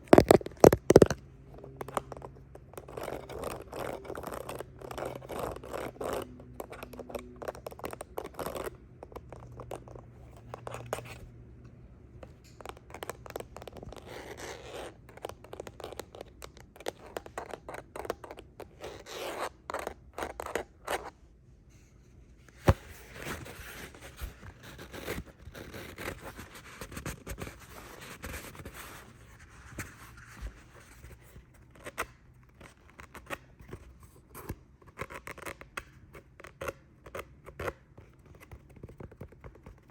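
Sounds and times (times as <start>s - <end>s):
fingernails scratching and tapping: 0.0s - 11.3s, 12.2s - 21.1s.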